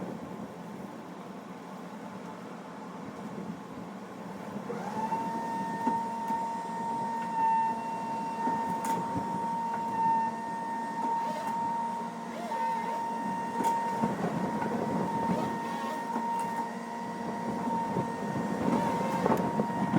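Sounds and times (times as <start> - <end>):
power trimmer motor whining: 11.0 - 14.0, 18.6 - 19.9.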